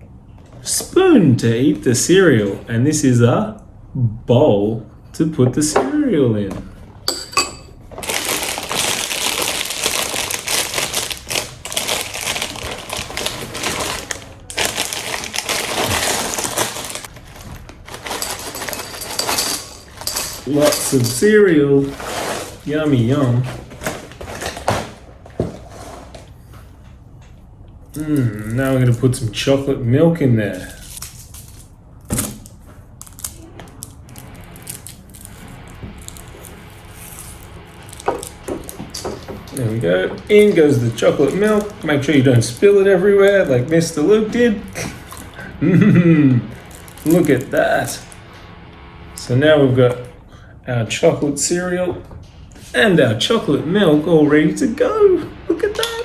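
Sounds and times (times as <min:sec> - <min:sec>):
packaging rustling: 0:07.8 - 0:25.9, 0:30.6 - 0:45.7, 0:46.4 - 0:48.2.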